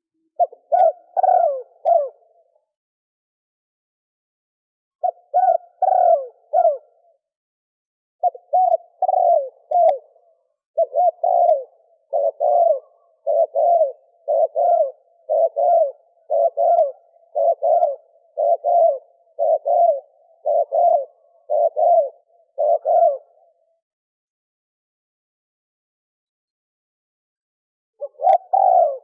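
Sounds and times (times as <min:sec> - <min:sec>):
dove cooing: 0:00.2 - 0:02.6, 0:05.0 - 0:07.2, 0:08.2 - 0:23.8, 0:28.0 - 0:29.0.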